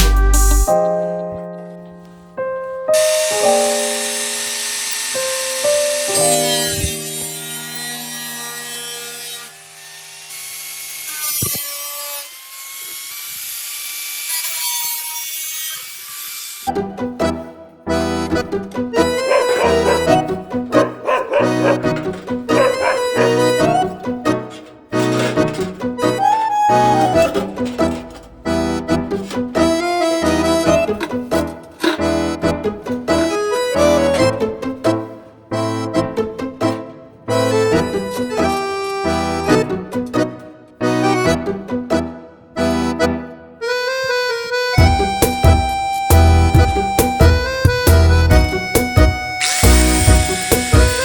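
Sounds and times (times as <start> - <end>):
background music with held notes: 0.0 - 9.9, 16.7 - 51.0
tool rasping and scraping: 3.0 - 16.7, 19.0 - 29.8, 48.8 - 51.0.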